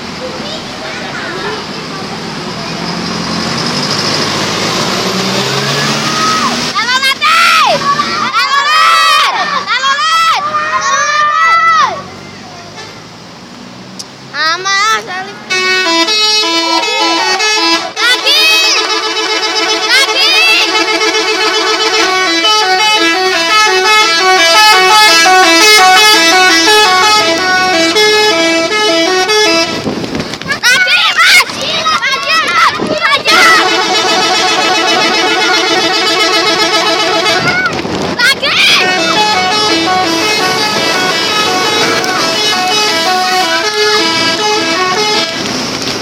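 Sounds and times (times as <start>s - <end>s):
multi-tone bus horn tune: 15.2s - 30.0s, 33.0s - 45.7s.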